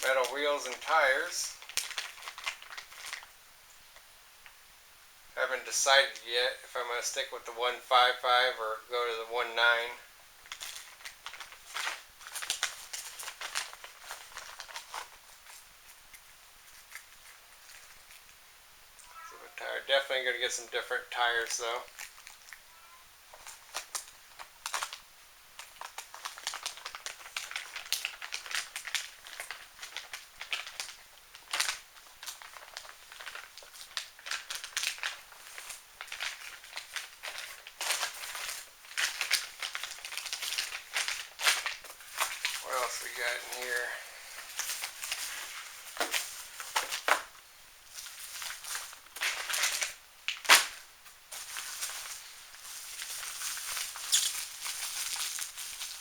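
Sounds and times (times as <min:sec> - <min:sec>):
plastic packaging rustling: 0:00.0 - 0:03.3, 0:10.4 - 0:18.4, 0:21.1 - 0:22.6, 0:23.3 - 0:25.0, 0:25.6 - 0:56.0
plastic parts clicking and crinkling: 0:01.6 - 0:03.3, 0:10.4 - 0:15.2, 0:23.3 - 0:25.0, 0:25.6 - 0:56.0.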